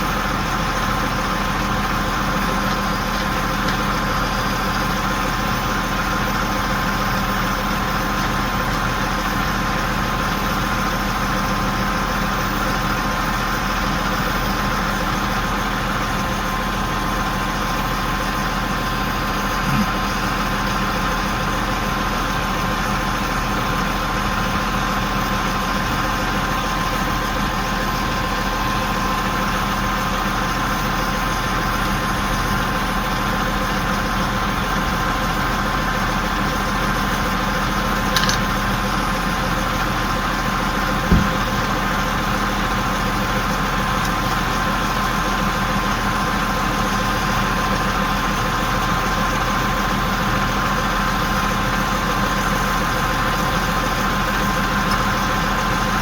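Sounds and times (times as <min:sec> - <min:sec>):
crane engine idling: 0:00.0 - 0:56.0
knock: 0:41.1 - 0:41.4.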